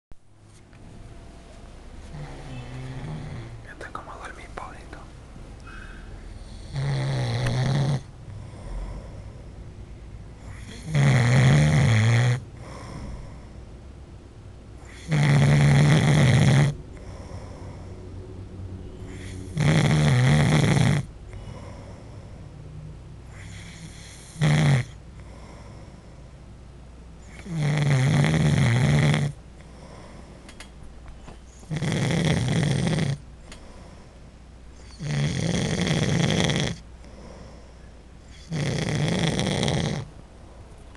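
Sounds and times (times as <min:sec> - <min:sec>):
man snoring: 0:02.1 - 0:04.2, 0:06.4 - 0:09.3, 0:10.5 - 0:13.3, 0:14.9 - 0:17.8, 0:19.1 - 0:22.1, 0:23.3 - 0:25.8, 0:27.3 - 0:30.0, 0:31.7 - 0:33.2, 0:34.9 - 0:37.5, 0:38.3 - 0:40.1.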